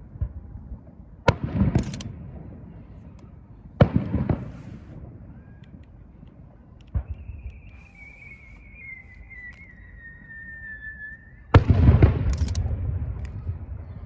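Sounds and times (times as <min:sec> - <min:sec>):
sharp firework crackles: 0:03.8 - 0:05.2
firework bursting with deep boom: 0:03.8 - 0:05.3, 0:11.5 - 0:14.0
falling firework whistle: 0:07.0 - 0:12.2.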